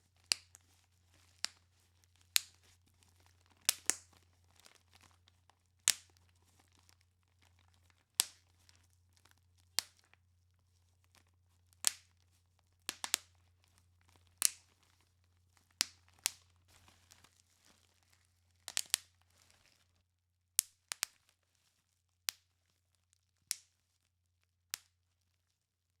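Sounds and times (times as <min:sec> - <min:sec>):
bubble wrap popping: 0:00.0 - 0:20.0, 0:20.6 - 0:21.4
plastic crinkling: 0:00.0 - 0:20.0.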